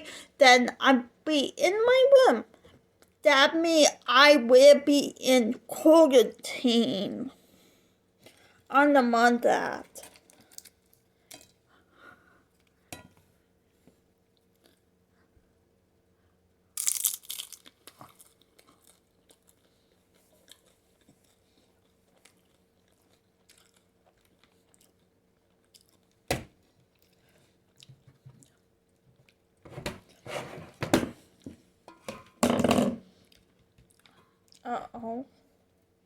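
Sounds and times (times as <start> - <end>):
faint steady hum: 0.0 - 36.0
person crunching food: 16.8 - 26.2.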